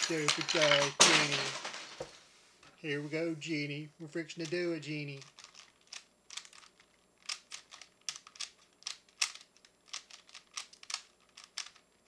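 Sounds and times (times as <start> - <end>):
plastic puzzle cube clicking: 5.2 - 11.8.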